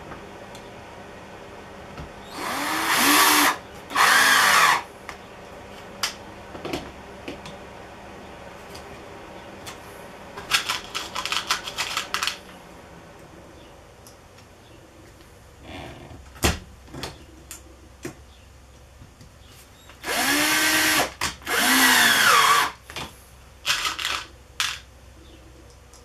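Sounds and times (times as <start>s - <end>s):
cordless drill driving screws: 2.3s - 4.8s, 20.0s - 22.8s
clicks and rattles: 10.4s - 12.5s.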